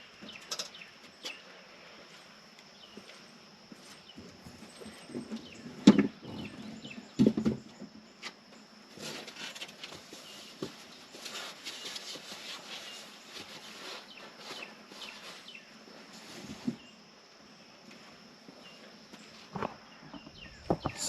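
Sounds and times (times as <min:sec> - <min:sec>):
rustling and scraping handling: 0:02.0 - 0:17.1
faint bird chirps: 0:18.6 - 0:21.0.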